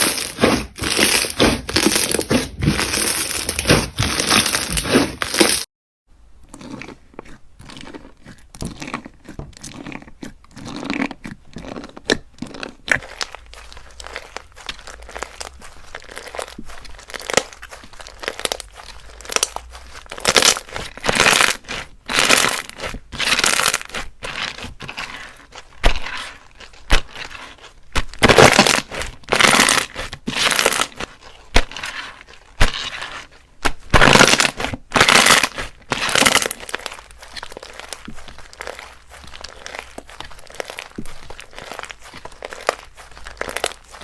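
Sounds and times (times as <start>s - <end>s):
slime crackling and popping: 10.6s - 44.0s.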